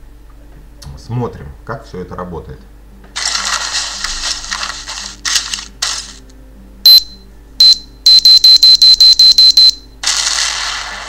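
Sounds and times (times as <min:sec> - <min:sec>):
high electronic beeps: 0:06.9 - 0:09.8
hissing noise: 0:10.0 - 0:11.0.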